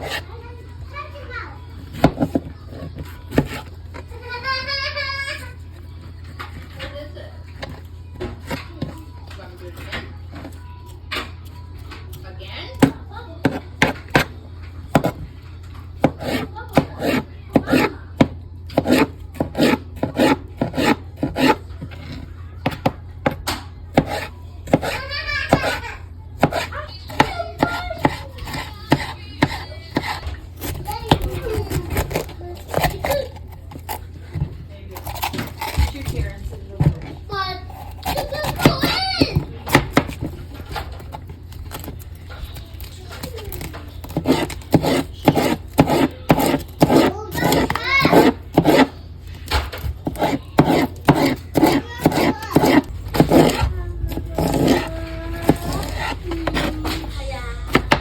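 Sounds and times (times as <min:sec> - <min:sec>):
cleaver rasping through food: 0:00.0 - 0:00.4, 0:15.0 - 0:18.0, 0:18.7 - 0:22.9, 0:23.9 - 0:58.0.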